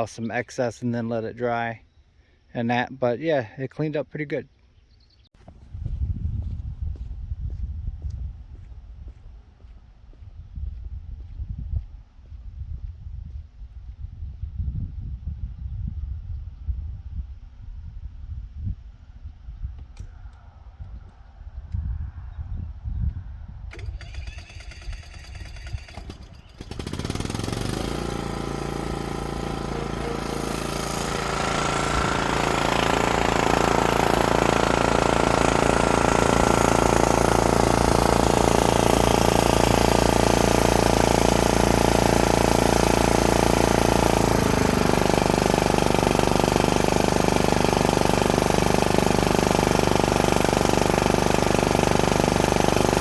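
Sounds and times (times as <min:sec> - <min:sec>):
mower engine starting and running: 0:23.7 - 0:53.0.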